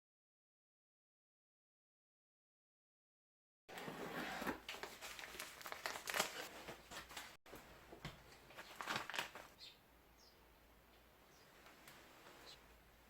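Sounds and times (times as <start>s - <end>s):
material crinkling and rustling: 3.7s - 9.6s.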